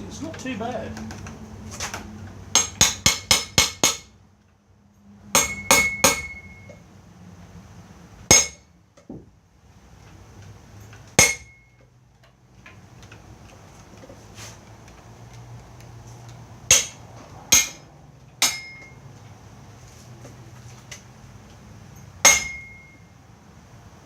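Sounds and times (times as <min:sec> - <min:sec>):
hammer striking steel: 0:02.5 - 0:04.2, 0:05.3 - 0:06.8, 0:08.3 - 0:08.7, 0:11.2 - 0:11.7, 0:16.7 - 0:19.0, 0:22.2 - 0:23.0.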